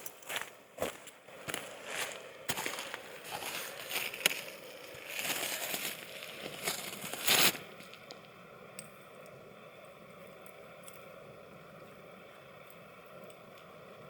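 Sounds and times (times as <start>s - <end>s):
faint steady hum: 0.0s - 14.0s
snow crunching and scraping: 0.3s - 8.2s.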